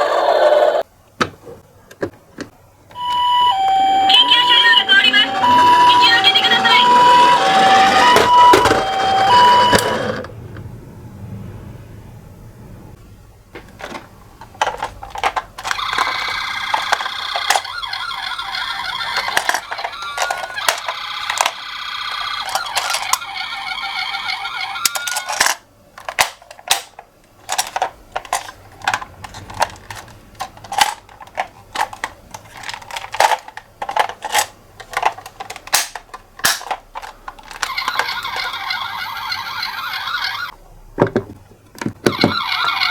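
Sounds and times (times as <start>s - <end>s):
toy ambulance siren: 2.9s - 10.3s, 15.7s - 25.4s, 37.5s - 40.6s, 42.0s - 42.9s
raspy electronic tone: 3.0s - 10.2s.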